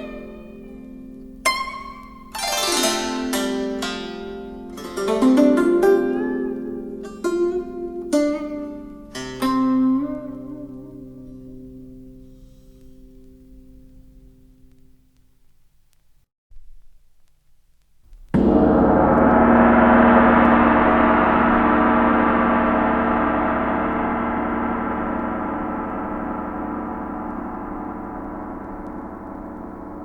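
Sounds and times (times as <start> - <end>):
gong strike ringing: 18.4 - 30.0.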